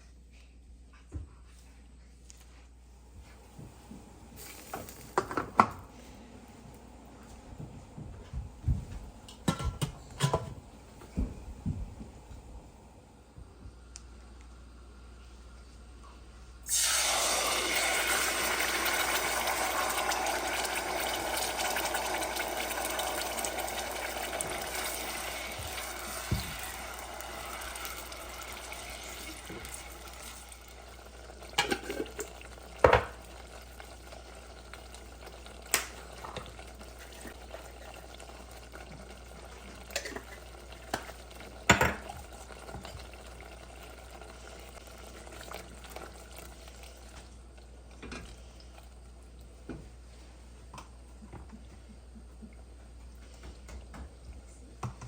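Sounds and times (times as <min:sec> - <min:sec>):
sizzling in a hot pan: 0:16.7 - 0:32.2.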